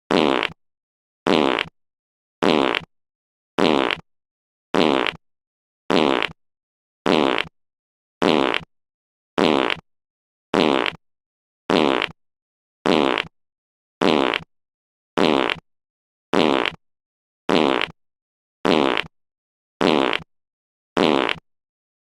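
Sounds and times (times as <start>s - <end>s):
fart sound effect: 0.1s - 0.6s, 1.3s - 1.7s, 2.4s - 2.9s, 3.6s - 4.0s, 4.8s - 5.2s, 5.9s - 6.4s, 7.1s - 7.5s, 8.2s - 8.7s, 9.4s - 9.8s, 10.6s - 11.0s, 11.7s - 12.2s, 12.9s - 13.3s, 14.0s - 14.5s, 15.2s - 15.6s, 16.4s - 16.8s, 17.5s - 18.0s, 18.6s - 19.1s, 19.8s - 20.3s, 21.0s - 21.4s.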